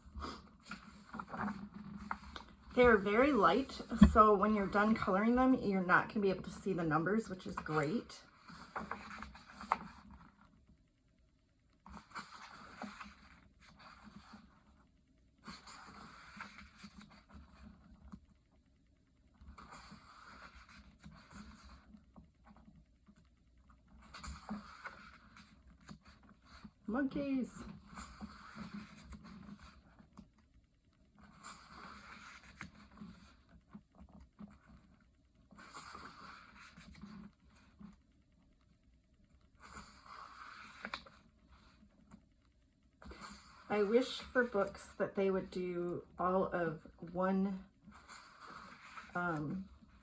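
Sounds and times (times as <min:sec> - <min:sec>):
paper pages rustling and turning: 0:00.6 - 0:05.1, 0:07.6 - 0:10.5, 0:11.8 - 0:14.8, 0:15.4 - 0:18.3, 0:19.5 - 0:26.9, 0:31.1 - 0:38.1, 0:39.6 - 0:42.2, 0:47.8 - 0:50.0.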